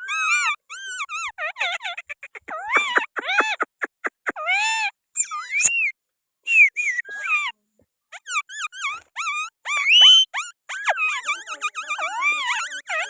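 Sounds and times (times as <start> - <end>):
parrot chattering calls: 0.1 - 5.7
parrot whistled calls: 5.2 - 7.4, 8.8 - 11.2.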